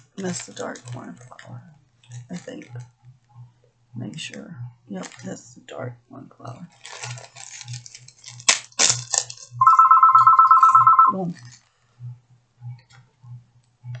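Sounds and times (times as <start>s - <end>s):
telephone ringing: 9.6s - 11.3s.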